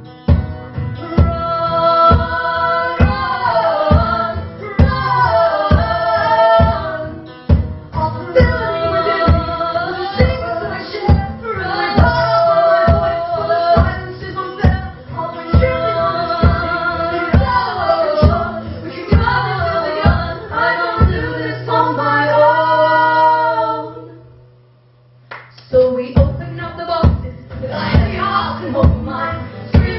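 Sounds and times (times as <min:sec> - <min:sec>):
live band music: 0:00.0 - 0:23.8, 0:25.5 - 0:29.9
person singing: 0:08.0 - 0:23.8.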